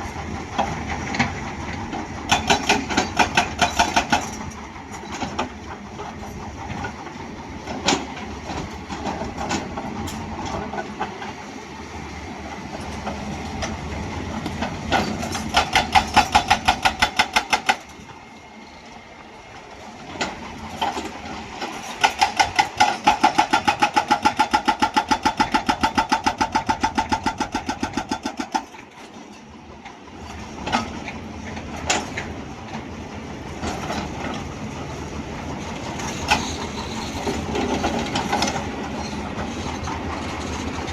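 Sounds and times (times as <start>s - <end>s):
hydraulic breaker hammering rock: 2.3s - 5.4s, 14.9s - 18.0s, 20.2s - 28.8s.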